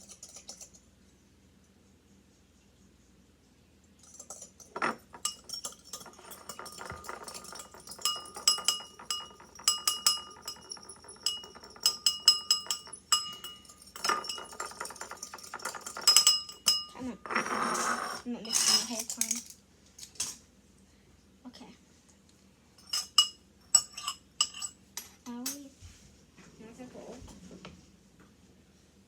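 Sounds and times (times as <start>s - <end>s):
fork clinking in bowl: 4.0s - 19.4s, 22.8s - 24.8s.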